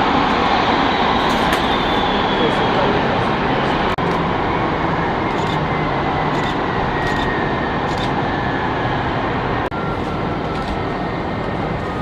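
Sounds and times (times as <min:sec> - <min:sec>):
jet engines running: 0:00.0 - 0:12.0.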